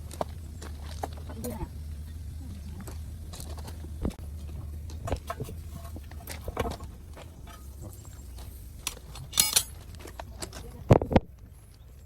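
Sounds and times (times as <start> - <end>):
steady low hum: 0.0 - 12.0
short fast rattle: 4.9 - 10.1
metal tools clinking on metal: 5.1 - 10.6.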